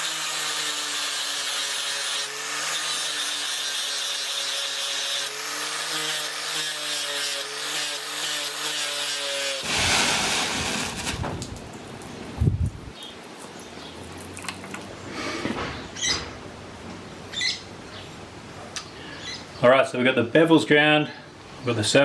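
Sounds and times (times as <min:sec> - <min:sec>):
belt sander grinding metal: 0:00.0 - 0:09.6
rough rushing noise: 0:09.6 - 0:11.8.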